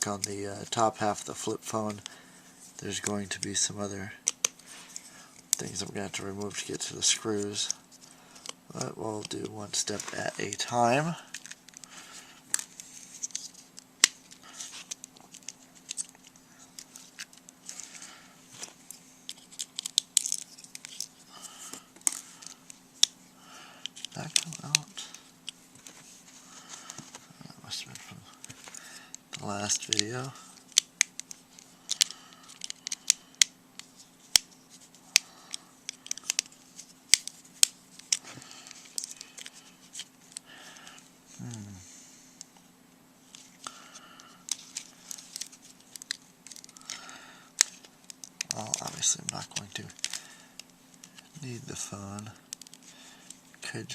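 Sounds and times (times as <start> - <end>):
plastic parts clicking: 4.2 - 5.1, 19.3 - 21.1, 23.8 - 25.6, 28.4 - 40.4, 44.4 - 51.3.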